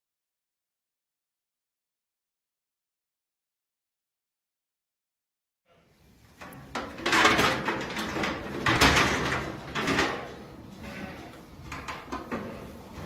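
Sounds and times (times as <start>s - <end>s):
metal crate gates clattering: 6.6s - 10.6s.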